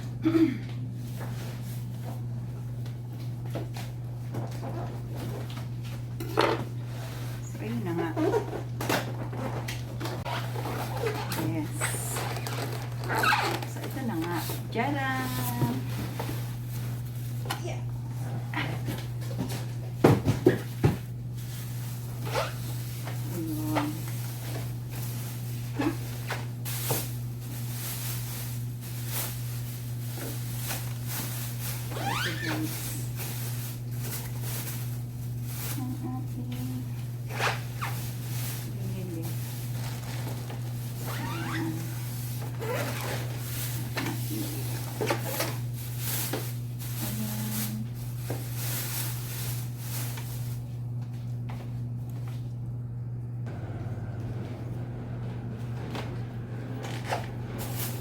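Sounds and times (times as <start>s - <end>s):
rustle of things handled: 0.6s - 52.6s, 53.5s - 58.0s
steady low hum: 43.3s - 58.0s.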